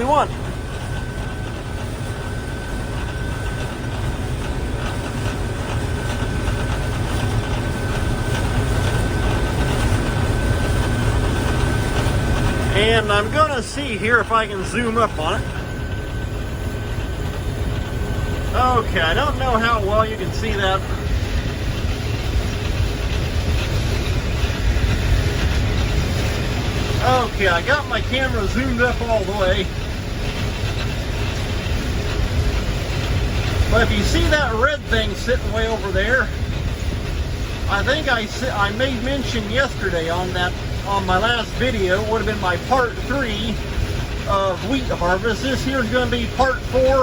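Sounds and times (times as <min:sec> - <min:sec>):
combine harvester engine rumble: 0:00.0 - 0:47.0
thin steady whine: 0:00.0 - 0:47.0.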